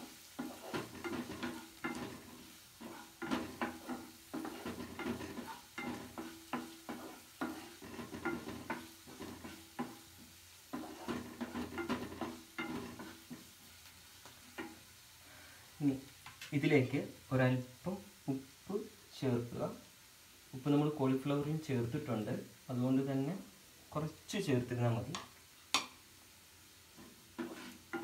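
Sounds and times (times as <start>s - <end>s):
utensil scraping a frying pan: 0.0s - 14.9s, 26.9s - 28.0s
light sizzle: 0.0s - 28.0s.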